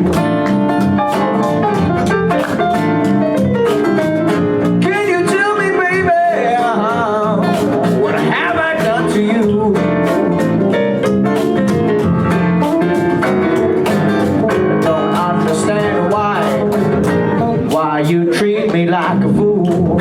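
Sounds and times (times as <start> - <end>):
live blues-rock band: 0.0 - 20.0
person singing: 4.8 - 10.4, 14.7 - 20.0.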